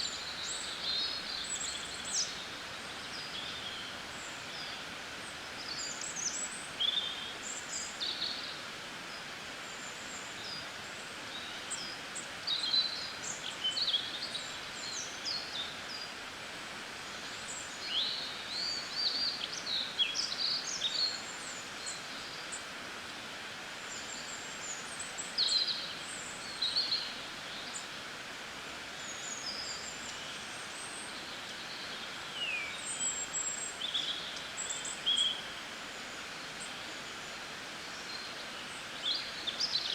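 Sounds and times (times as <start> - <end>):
background hiss: 0.0 - 39.9
songbirds chirping: 23.4 - 39.9.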